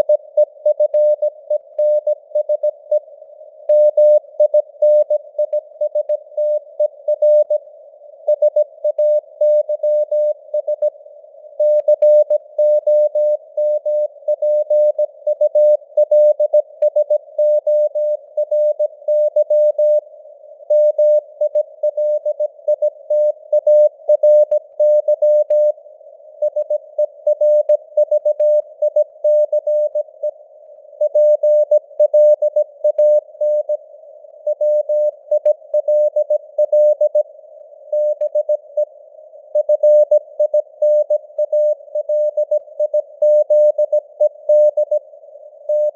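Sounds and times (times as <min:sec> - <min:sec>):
faint radio hiss: 0:01.3 - 0:11.6, 0:25.6 - 0:42.0, 0:44.0 - 0:45.9
morse code beeps: 0:31.0 - 0:33.8, 0:39.6 - 0:45.0.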